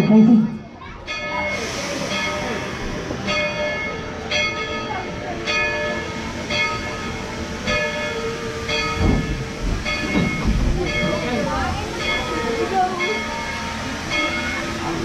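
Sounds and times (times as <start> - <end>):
locomotive bell ringing: 0.0 - 15.0.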